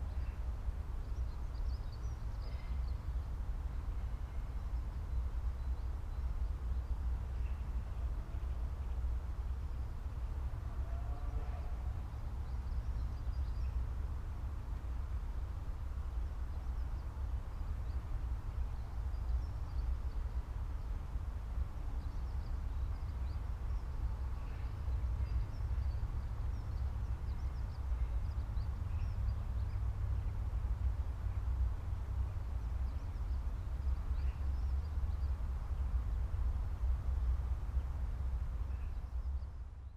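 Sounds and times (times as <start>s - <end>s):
faint bird chirps: 1.1s - 3.3s.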